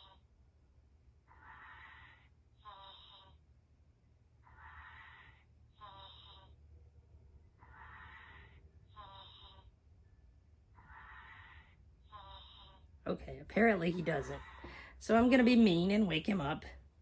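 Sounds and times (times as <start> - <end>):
toy electronic snoring: 0.0 - 0.2, 1.3 - 3.5, 4.4 - 6.6, 7.6 - 9.8, 10.8 - 12.9.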